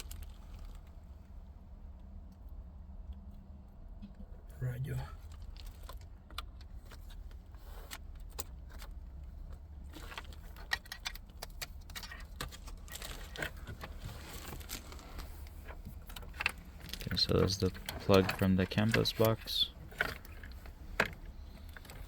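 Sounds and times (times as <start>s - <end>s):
steady low hum: 0.1s - 5.9s, 12.8s - 22.0s
plastic clicks and rattles: 8.2s - 22.0s.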